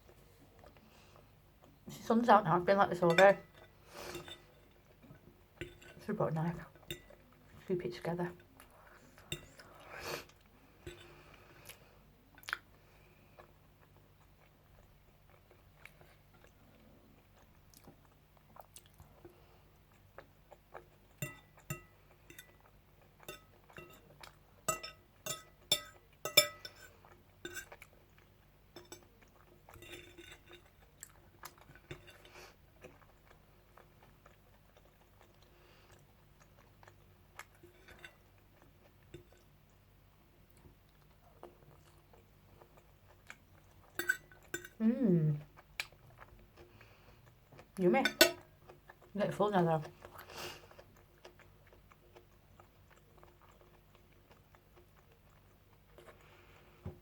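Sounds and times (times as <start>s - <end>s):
person chewing food: 0.0s - 2.0s, 3.1s - 7.7s, 8.4s - 49.2s, 49.8s - 57.0s
cutlery clinking on a plate: 3.1s - 4.6s, 5.6s - 6.0s, 21.2s - 22.6s, 23.2s - 24.0s, 24.7s - 27.9s, 28.8s - 29.1s, 29.7s - 30.8s, 31.6s - 32.3s, 43.9s - 44.8s, 48.0s - 48.4s.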